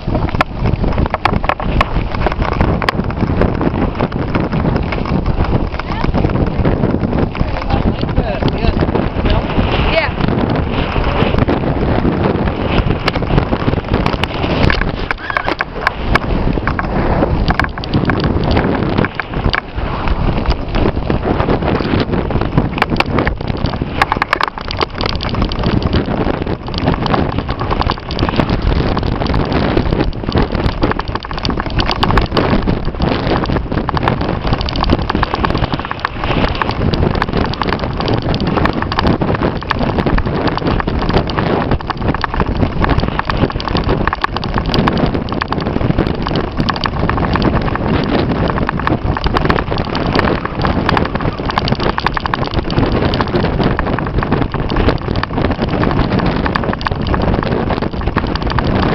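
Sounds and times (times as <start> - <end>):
wind buffeting microphone: 0.0 - 58.9.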